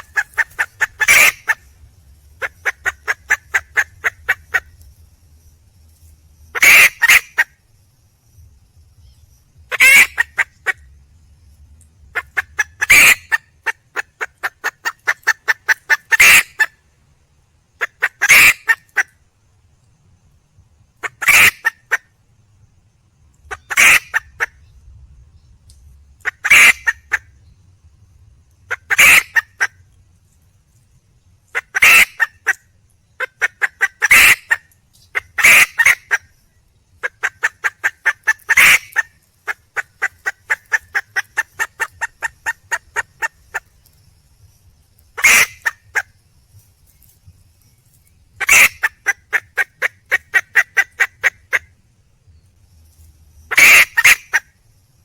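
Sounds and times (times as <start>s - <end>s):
hen clucking: 0.0s - 1.7s, 2.4s - 4.7s, 6.6s - 7.5s, 9.7s - 10.8s, 12.2s - 16.7s, 17.8s - 19.1s, 23.5s - 24.6s, 26.2s - 27.2s, 28.6s - 29.7s, 31.5s - 32.6s, 33.2s - 36.3s, 37.0s - 43.7s, 45.2s - 46.1s, 48.4s - 51.7s, 53.5s - 54.5s
junglefowl hen squawking: 0.0s - 1.7s, 2.4s - 4.7s, 6.6s - 7.5s, 9.7s - 10.8s, 12.1s - 16.8s, 17.8s - 19.1s, 21.0s - 22.1s, 23.5s - 24.6s, 26.2s - 27.3s, 28.7s - 29.8s, 31.5s - 32.6s, 33.2s - 36.3s, 37.0s - 43.7s, 45.2s - 46.1s, 48.4s - 51.7s, 53.5s - 54.5s.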